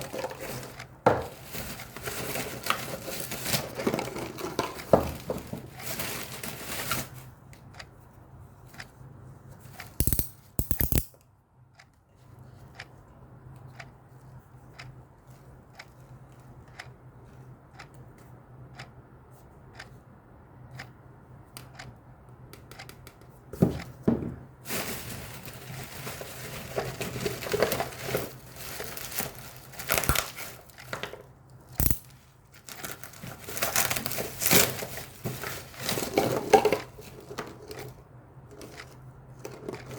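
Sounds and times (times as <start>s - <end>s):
small clicks: 9.8s - 12.0s
packaging tearing and crinkling: 25.3s - 30.7s, 32.7s - 35.9s.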